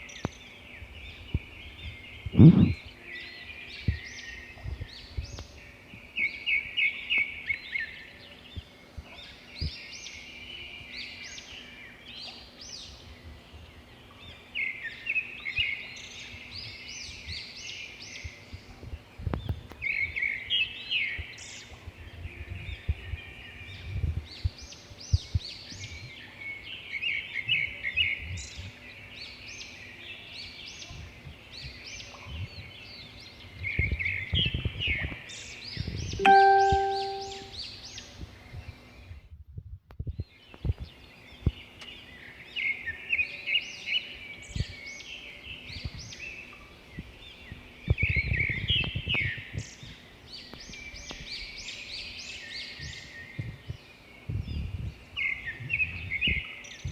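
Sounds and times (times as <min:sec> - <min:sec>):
songbird singing trilled phrases: 0:31.6 - 0:38.1.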